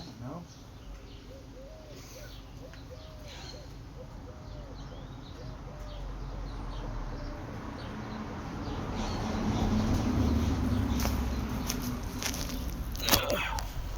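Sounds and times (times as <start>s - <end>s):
small birds chirping: 0.0s - 13.9s
bird cooing: 0.8s - 11.6s.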